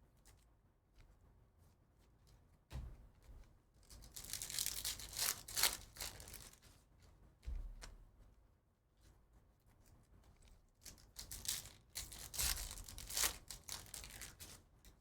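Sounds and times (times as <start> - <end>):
foil wrapper tearing and crinkling: 4.0 - 6.6, 10.9 - 14.6.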